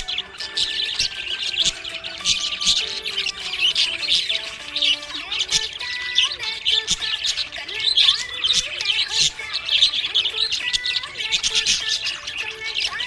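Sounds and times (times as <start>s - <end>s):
budgerigars chirping and chattering: 0.0s - 13.0s.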